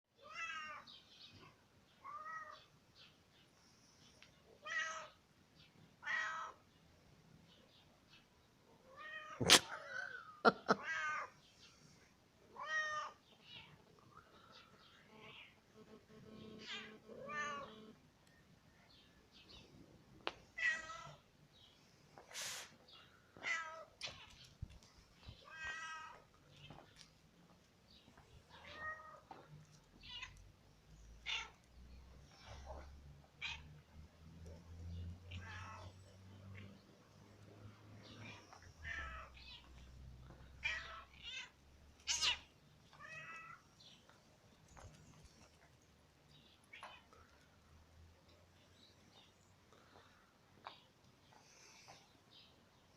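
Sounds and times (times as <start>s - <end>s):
pet animal high-pitched cries: 40.6s - 43.6s.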